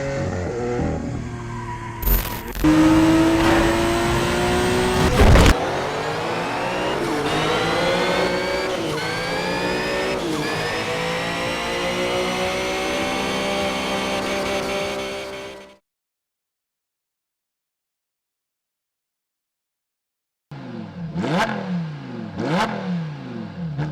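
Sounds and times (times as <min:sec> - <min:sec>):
sports car engine accelerating: 0:00.0 - 0:15.8, 0:20.5 - 0:23.9
loud short burst: 0:03.2 - 0:07.9.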